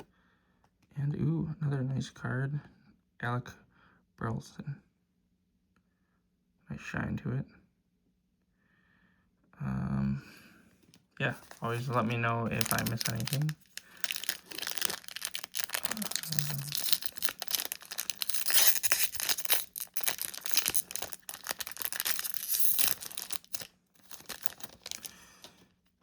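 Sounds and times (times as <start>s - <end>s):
wrapper tearing and crinkling: 11.4s - 25.2s.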